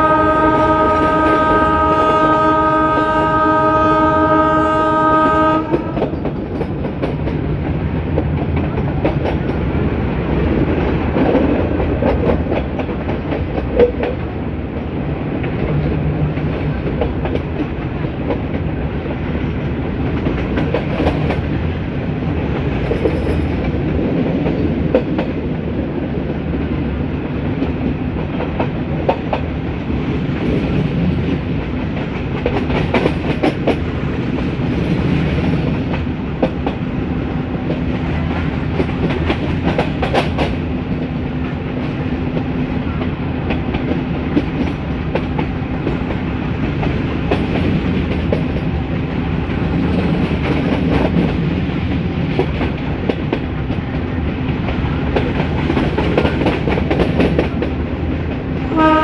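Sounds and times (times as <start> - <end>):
locomotive horn: 0.0 - 6.2, 58.7 - 59.0
train rumbling: 0.0 - 59.0
wheels clicking over rail joints: 5.3 - 59.0.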